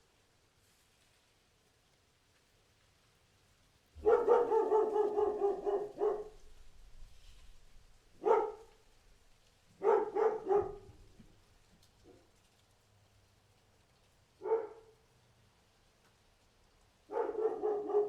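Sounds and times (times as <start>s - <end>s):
large dog barking: 4.0s - 6.5s, 8.1s - 8.8s, 9.8s - 11.1s, 14.4s - 15.0s, 17.1s - 18.0s.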